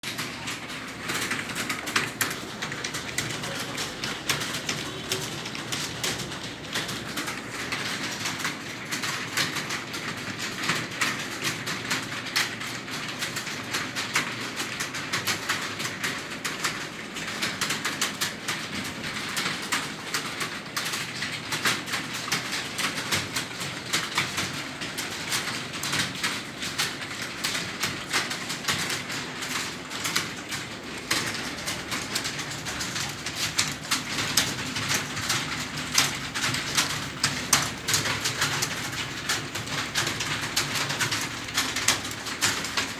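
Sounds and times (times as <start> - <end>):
computer keyboard typing: 0.0 - 42.9.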